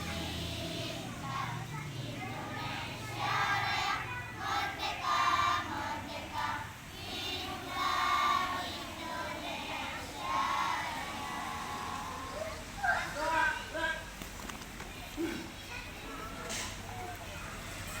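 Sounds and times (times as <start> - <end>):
children singing: 0.0 - 12.4.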